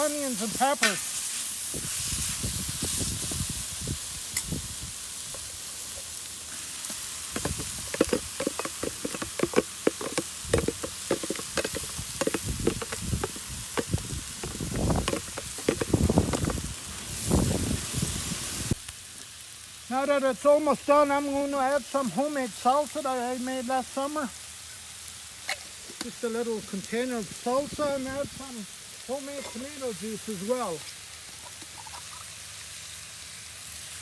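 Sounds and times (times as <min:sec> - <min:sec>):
food sizzling in a frying pan: 0:00.0 - 0:34.0
utensil clicking against pan: 0:07.4 - 0:16.6.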